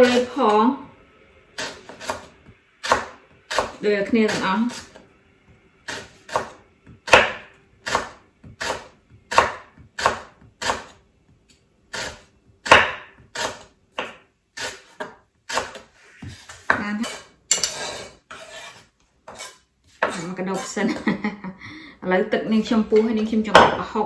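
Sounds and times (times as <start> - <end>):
knife chopping on cutting board: 0.0 - 0.4, 1.6 - 5.0, 5.9 - 11.0, 11.9 - 20.8.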